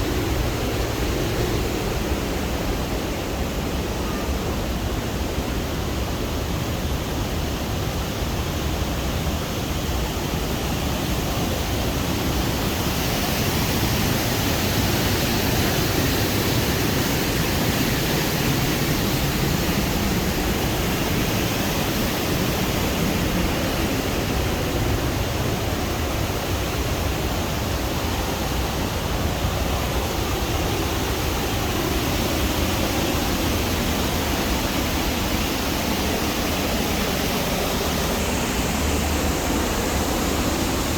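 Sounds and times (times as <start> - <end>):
waterfall roaring: 0.0 - 40.9.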